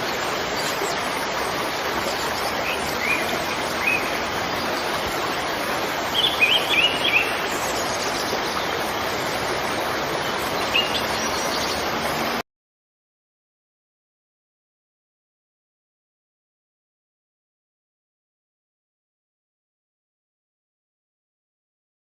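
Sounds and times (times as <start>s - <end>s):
birds chirping: 0.0s - 12.4s
waterfall rushing: 0.0s - 12.4s.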